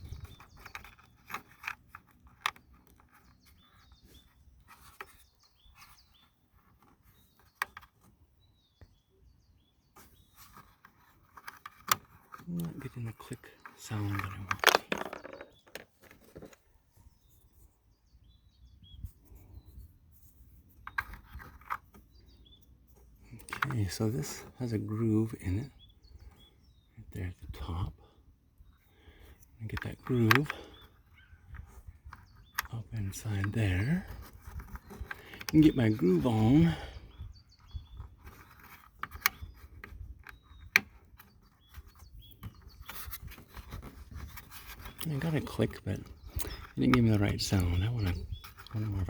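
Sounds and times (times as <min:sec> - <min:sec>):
faint bird chirps: 0:00.0 - 0:49.0
plastic scraping and knocks: 0:10.0 - 0:16.7, 0:20.8 - 0:22.0, 0:33.3 - 0:36.6, 0:37.5 - 0:49.0.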